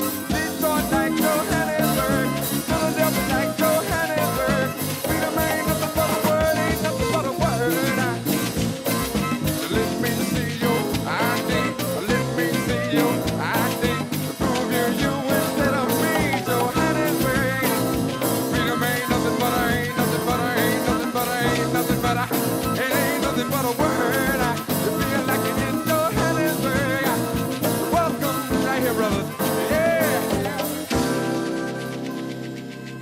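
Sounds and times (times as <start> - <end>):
soul-funk band playing: 0.0 - 33.0.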